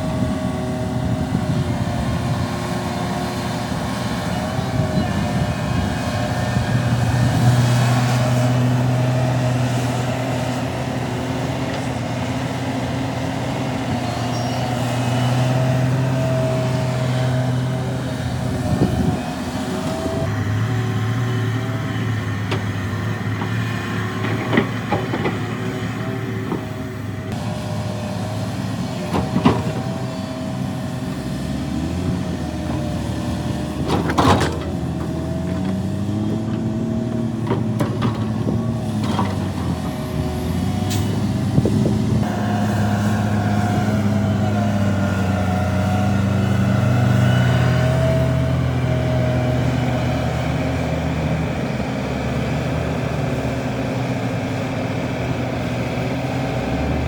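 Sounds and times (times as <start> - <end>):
heavy diesel machinery engine: 0.0 - 57.0.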